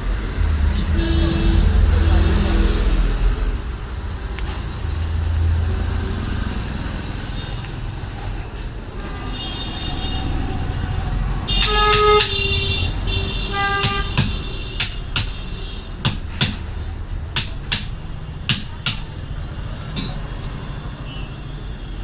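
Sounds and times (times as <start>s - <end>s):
road traffic rumble: 0.0s - 22.0s
vehicle horn: 0.8s - 2.4s, 11.5s - 14.8s.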